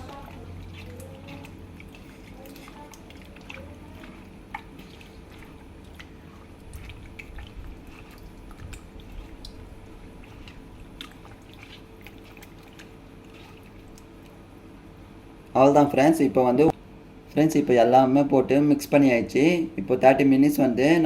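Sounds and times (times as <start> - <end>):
wet squelches of mixing meat: 0.0 - 14.6
faint steady hum: 0.0 - 21.0.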